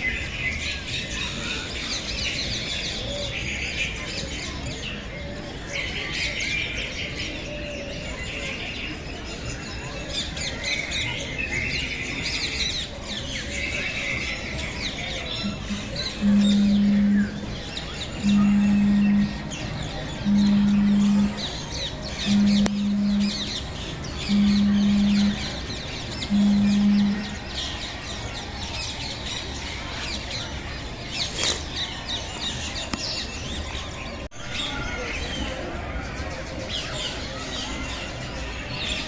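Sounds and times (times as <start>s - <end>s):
small birds chirping: 0.0s - 39.0s
loud low steady tone: 15.3s - 27.5s.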